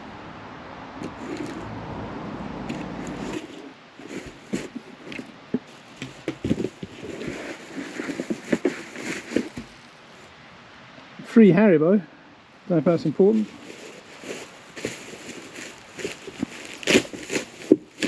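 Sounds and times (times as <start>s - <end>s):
cardboard packaging rustling: 1.0s - 1.6s, 2.7s - 10.0s, 13.3s - 18.0s
packaging crackles and knocks: 2.7s - 9.8s, 13.6s - 18.0s.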